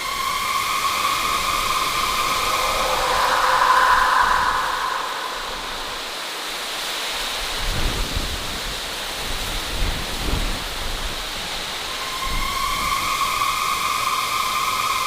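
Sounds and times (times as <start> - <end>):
thunder rumbling: 1.4 - 6.6.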